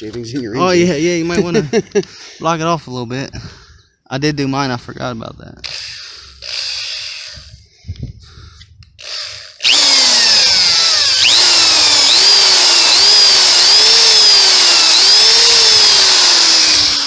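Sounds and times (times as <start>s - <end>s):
electric drill drilling: 5.6s - 7.5s, 9.0s - 17.0s.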